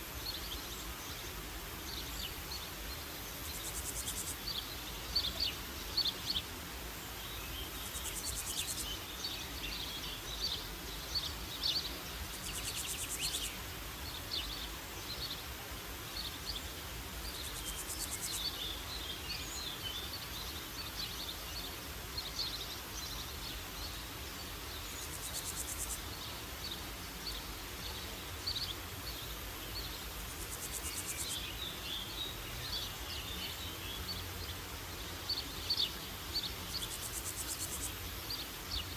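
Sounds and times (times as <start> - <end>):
forest birds chirping: 0.0 - 38.9.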